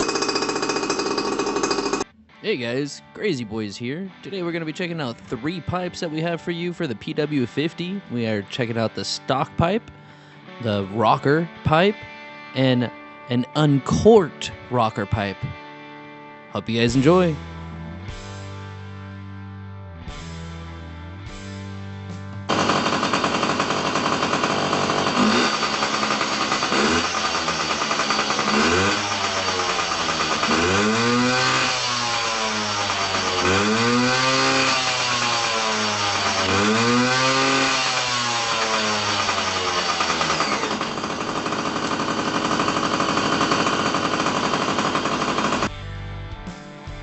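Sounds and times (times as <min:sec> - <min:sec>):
two-stroke engine revving: 0:00.0 - 0:02.0, 0:22.5 - 0:45.7.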